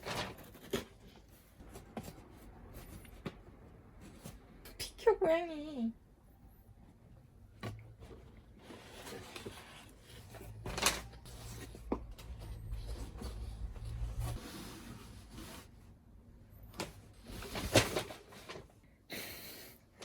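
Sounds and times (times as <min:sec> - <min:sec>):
rubbing and rustling: 0:00.0 - 0:04.6, 0:07.8 - 0:18.8
low hum: 0:11.3 - 0:14.6.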